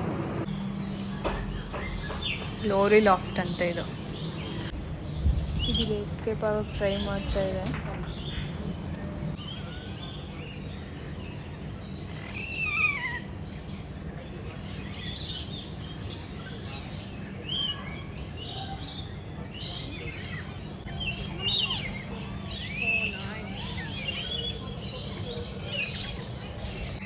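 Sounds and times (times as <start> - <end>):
low background hum: 0.0 - 27.0
lorikeets chirping and screeching: 0.4 - 27.0.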